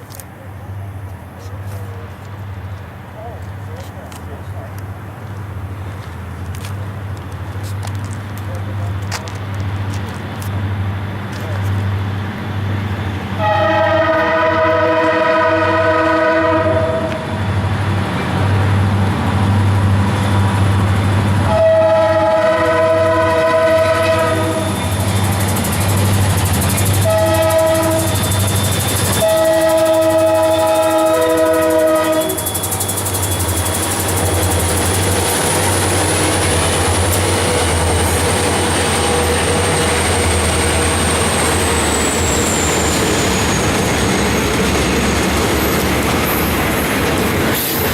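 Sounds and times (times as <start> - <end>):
diesel engines rumbling: 0.0 - 47.9
locomotive horn blasts: 13.4 - 17.4, 21.4 - 24.9, 27.0 - 28.4, 29.0 - 32.8.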